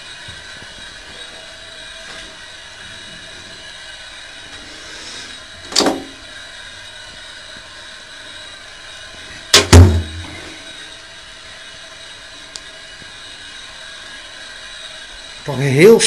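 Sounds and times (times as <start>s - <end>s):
sharp knock: 9.6s - 10.4s.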